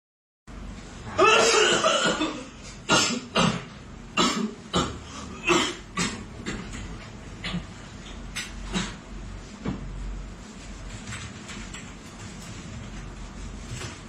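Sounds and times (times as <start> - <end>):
person coughing: 1.1 - 6.6.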